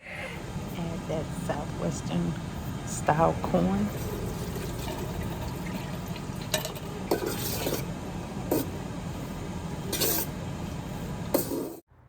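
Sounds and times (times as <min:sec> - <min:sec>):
steady low hum: 0:00.0 - 0:11.8
spoon scraping a pan: 0:06.4 - 0:07.9, 0:09.9 - 0:10.4.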